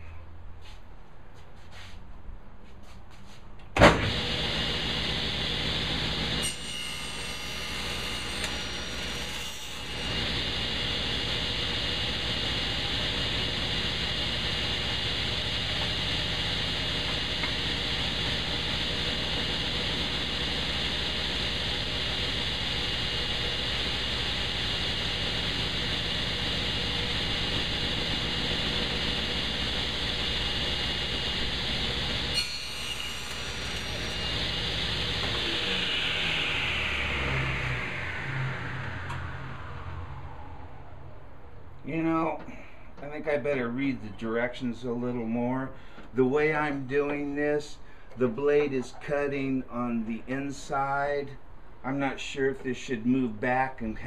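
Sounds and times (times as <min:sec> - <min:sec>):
table saw running: 0:03.9 - 0:41.2.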